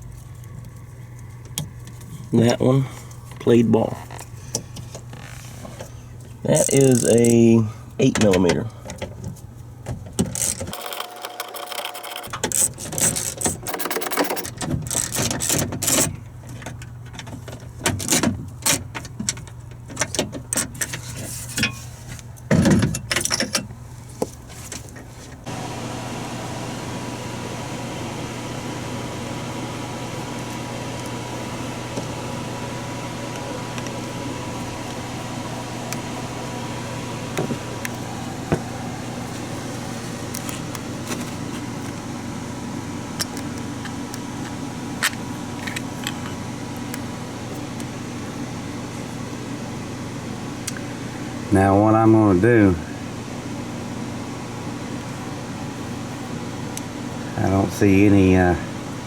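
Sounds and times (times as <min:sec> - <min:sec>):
steady hum: 0:25.4 - 0:59.0
faint high tone: 0:37.9 - 0:40.0.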